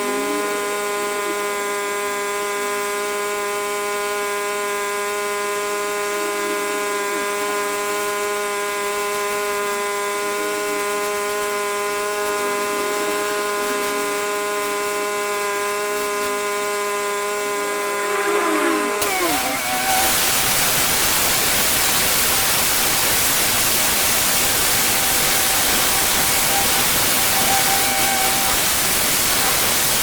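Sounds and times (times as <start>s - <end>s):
machine motor whining: 0.0s - 30.0s.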